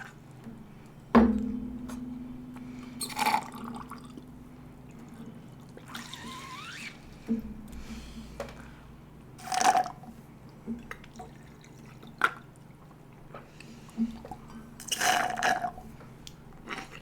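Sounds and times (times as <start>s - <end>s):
low hum: 0.4s - 5.9s
sharp knock: 1.2s - 2.4s
liquid splashing into glass: 3.0s - 4.3s
wet slurping: 5.0s - 7.0s, 16.6s - 17.0s.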